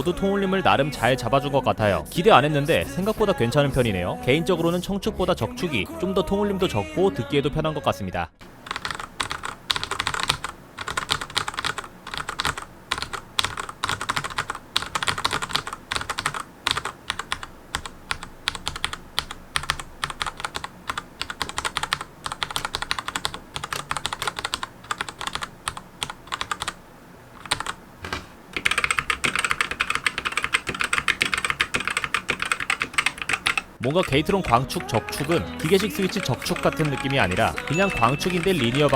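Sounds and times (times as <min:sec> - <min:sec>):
fast typing on keyboard: 0:08.4 - 0:38.9.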